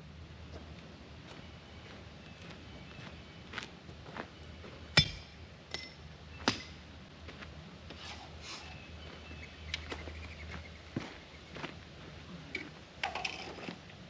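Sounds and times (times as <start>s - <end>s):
knocks and clinks of tools: 5.0s - 6.7s.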